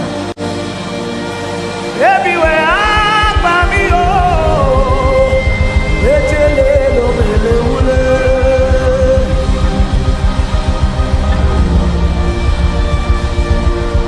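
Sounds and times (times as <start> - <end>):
gospel worship music: 0.0 - 14.0
person singing: 2.0 - 10.4
steady low beat: 2.0 - 14.0.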